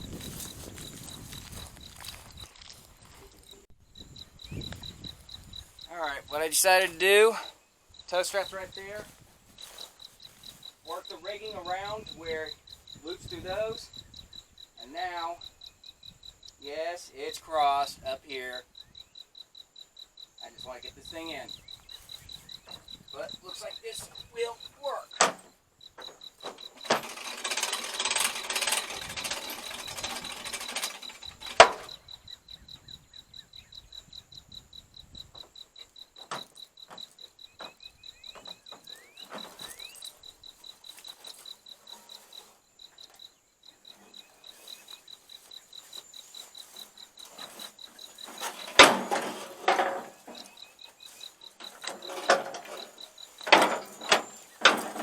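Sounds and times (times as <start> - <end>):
crickets chirping: 0.0 - 55.0
clanks and rattles: 25.1 - 32.2, 36.2 - 40.3, 46.7 - 55.0
rattling: 25.2 - 32.0, 47.2 - 55.0.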